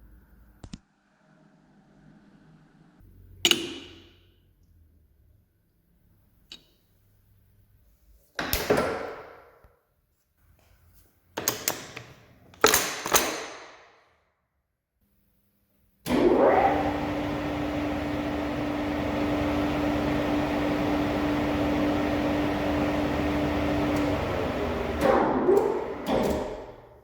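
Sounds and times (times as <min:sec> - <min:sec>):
metal lathe whirring: 0:16.1 - 0:26.8.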